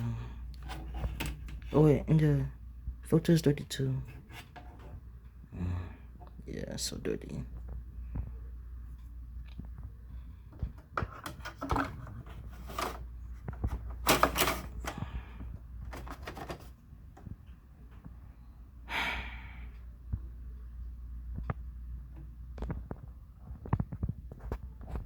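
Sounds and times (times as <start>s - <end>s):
steady low hum: 0.0s - 25.0s
plastic parts scraping and clicking: 0.5s - 1.9s, 4.1s - 5.0s, 10.5s - 15.1s, 15.8s - 17.4s.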